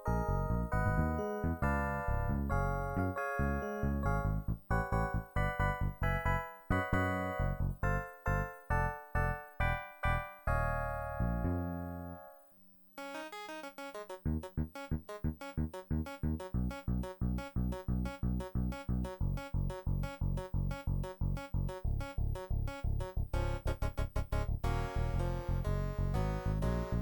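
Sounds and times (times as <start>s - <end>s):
electronic keyboard playing: 0.0s - 27.0s
low bass notes beat: 3.8s - 8.0s, 14.2s - 27.0s.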